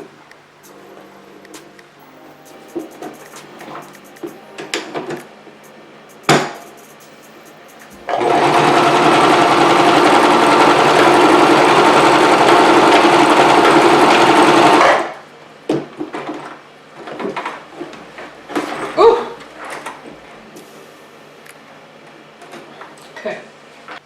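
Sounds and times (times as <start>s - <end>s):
sewing machine running: 8.0s - 15.2s.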